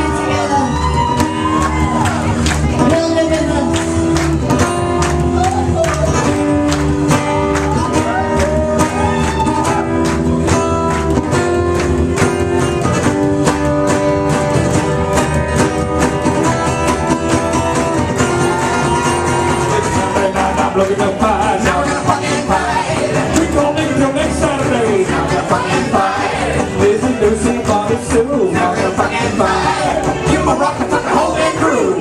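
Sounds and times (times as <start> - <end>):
guitar: 0.0 - 32.0
live band playing: 0.0 - 32.0
person singing: 19.6 - 32.0.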